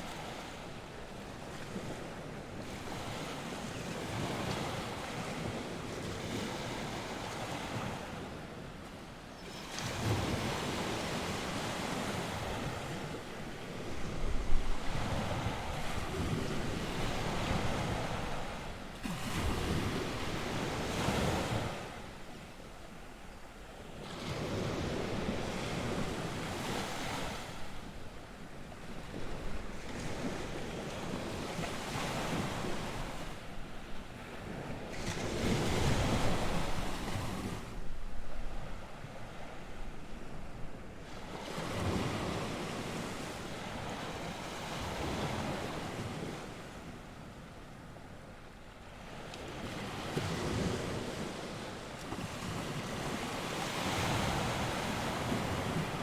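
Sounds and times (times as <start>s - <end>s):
waves breaking on shore: 0.0s - 56.0s
wind buffeting microphone: 11.9s - 22.0s.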